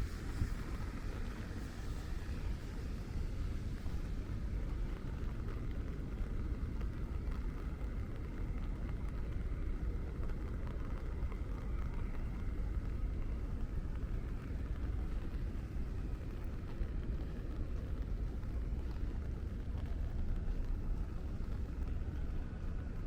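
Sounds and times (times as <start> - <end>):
rain hiss: 0.0 - 8.4.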